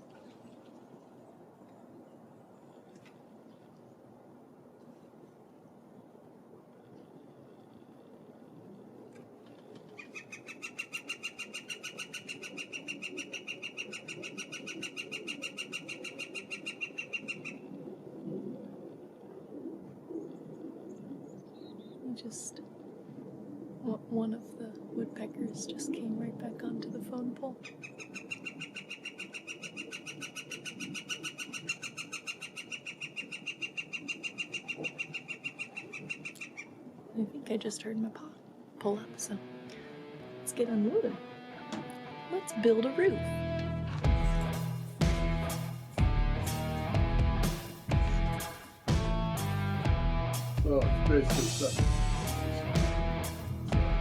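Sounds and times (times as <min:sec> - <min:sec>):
woodpecker calling: 0:10.0 - 0:17.7, 0:27.6 - 0:36.8.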